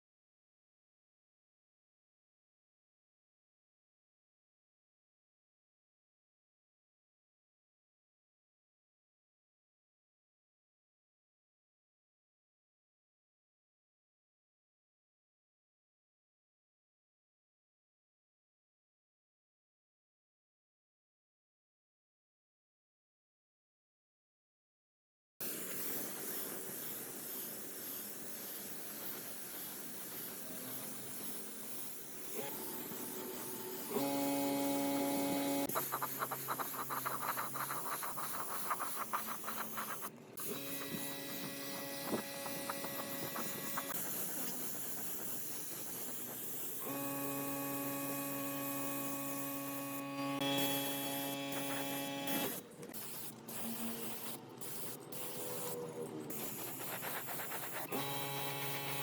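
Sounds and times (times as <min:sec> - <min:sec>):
working hiss: 0:25.4 - 0:59.0
power tool motor whine: 0:32.4 - 0:36.0, 0:40.4 - 0:44.1, 0:46.8 - 0:52.6, 0:57.8 - 0:59.0.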